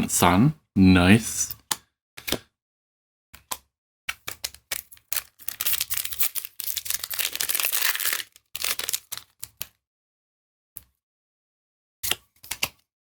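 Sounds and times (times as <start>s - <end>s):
cards clicking and snapping: 3.5s - 9.8s, 12.1s - 12.8s
foil wrapper crinkling and tearing: 4.6s - 9.5s.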